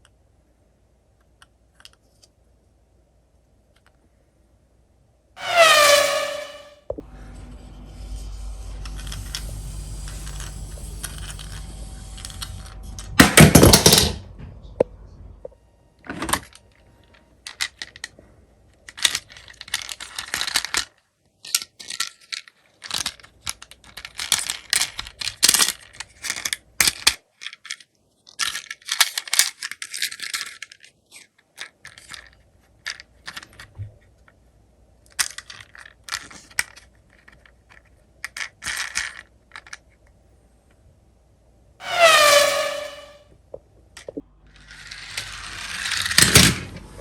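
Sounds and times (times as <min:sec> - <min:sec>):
toy cars clinking and clattering: 0:08.2 - 0:14.2, 0:16.1 - 0:34.4, 0:35.0 - 0:40.2, 0:43.9 - 0:47.0.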